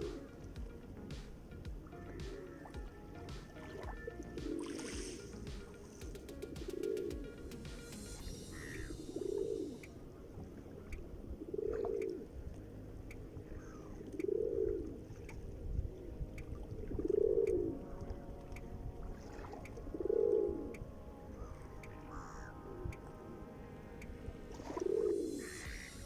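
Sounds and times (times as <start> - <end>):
low arched bird call: 6.6 - 10.0
higher bird calls: 7.9 - 10.0, 24.8 - 26.0.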